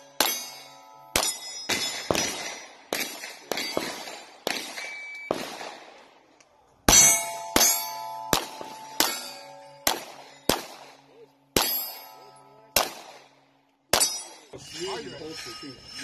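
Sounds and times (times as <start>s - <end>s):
steel plates ringing: 0.0s - 5.3s, 6.9s - 16.0s
pistol shots: 0.2s - 6.1s, 6.9s - 12.0s, 12.7s - 14.3s.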